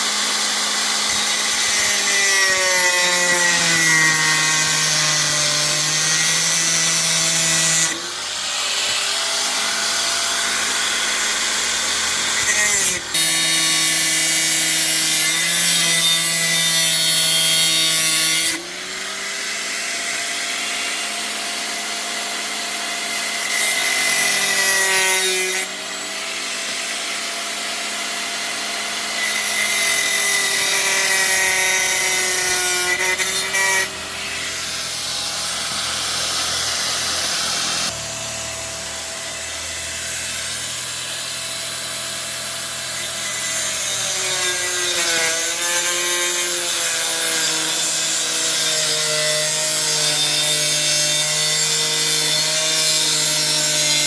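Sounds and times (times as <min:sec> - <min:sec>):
power tool motor running: 0:18.8 - 0:44.7.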